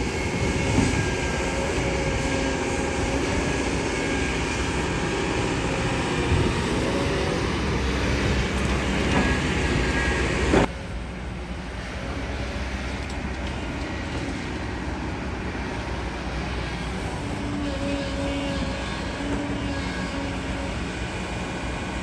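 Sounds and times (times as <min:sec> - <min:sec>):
excavator engine running: 0:00.0 - 0:22.0.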